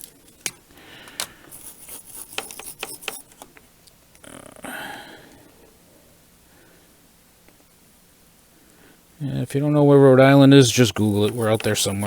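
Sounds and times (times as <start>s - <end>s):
tools clicking and tapping: 0.0s - 3.6s, 11.1s - 12.0s.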